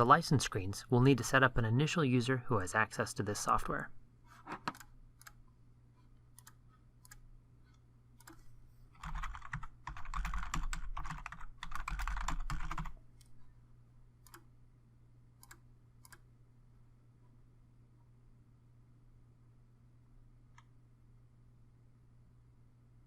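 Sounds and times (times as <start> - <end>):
typing on a keyboard: 9.0 - 13.0.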